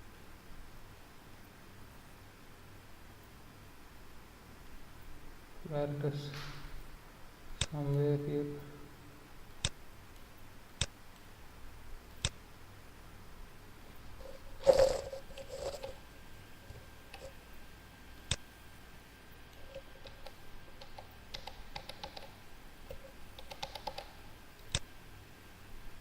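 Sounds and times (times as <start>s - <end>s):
computer mouse clicking: 9.5s - 11.3s, 12.1s - 12.4s, 14.2s - 16.0s, 16.7s - 17.4s, 19.5s - 24.9s.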